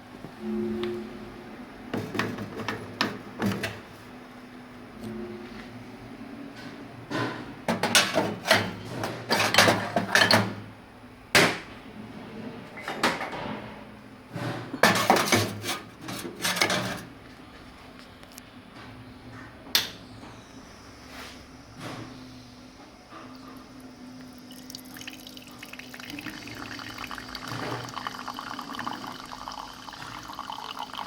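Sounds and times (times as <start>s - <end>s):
clattering and knocking: 7.1s - 10.6s, 14.4s - 17.1s.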